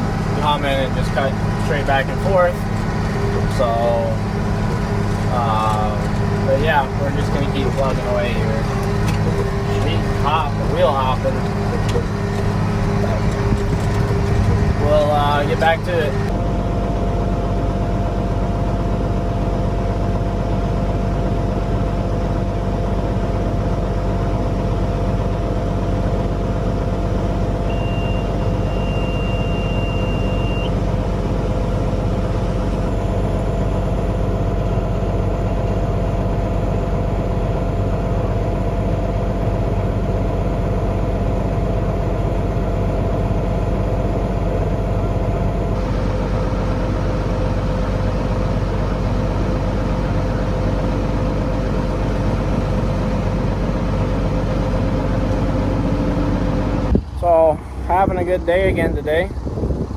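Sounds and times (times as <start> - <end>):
farm machine engine drone: 0.0 - 59.9
high beep: 27.7 - 30.7.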